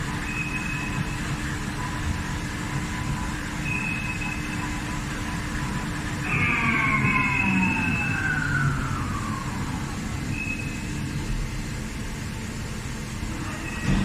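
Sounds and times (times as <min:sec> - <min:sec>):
lathe machine hum: 0:04.3 - 0:13.8
whine falling in pitch: 0:06.1 - 0:11.2.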